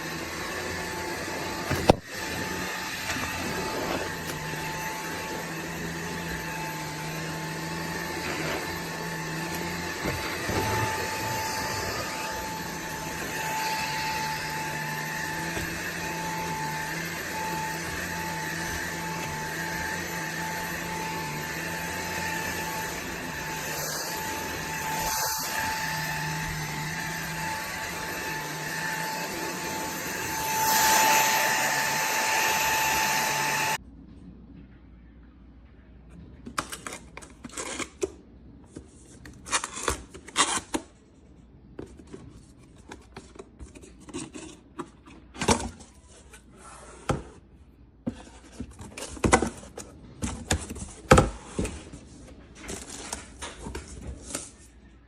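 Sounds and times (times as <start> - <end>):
stick vacuum whining: 0.0 - 33.8.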